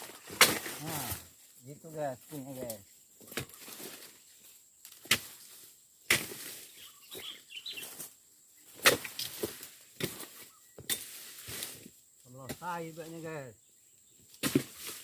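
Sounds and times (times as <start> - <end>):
harvesting tool chopping: 0.0 - 1.3, 2.6 - 4.1, 4.9 - 7.4, 8.7 - 12.9, 14.3 - 15.0.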